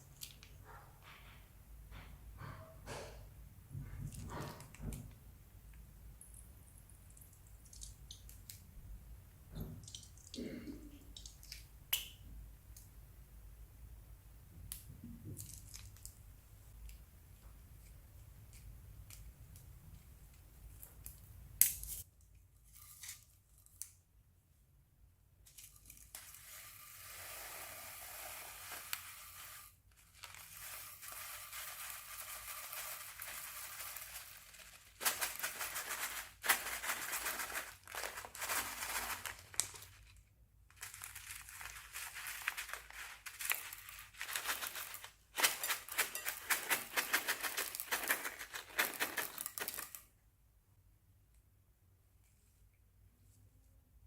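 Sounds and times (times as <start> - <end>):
plastic crinkling and crackling: 28.4 - 50.1
slime squishing in plastic bag: 30.0 - 40.1.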